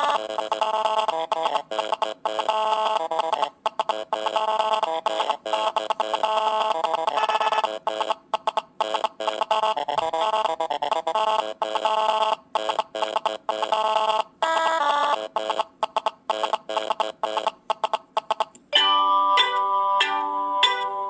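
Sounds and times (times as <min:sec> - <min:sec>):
electronic ringtone melody: 0:04.2 - 0:08.2, 0:18.4 - 0:21.0
chiming ringtone: 0:18.7 - 0:21.0.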